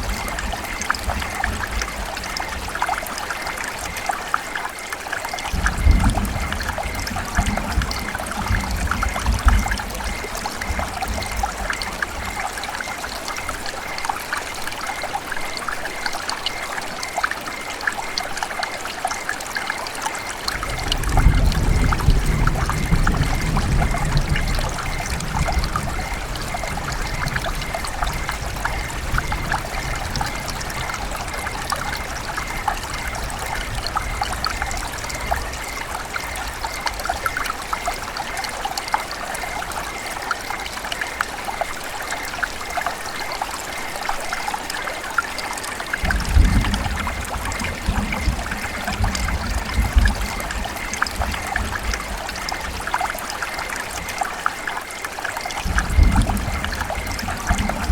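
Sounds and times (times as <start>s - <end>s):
river water babbling: 24.5s - 57.9s.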